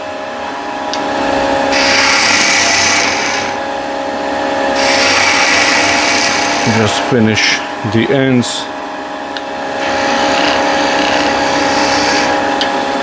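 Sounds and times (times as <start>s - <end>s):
wood lathe humming: 0.0s - 13.0s
tool cutting spinning wood: 1.1s - 3.7s, 4.7s - 8.2s, 9.6s - 13.0s.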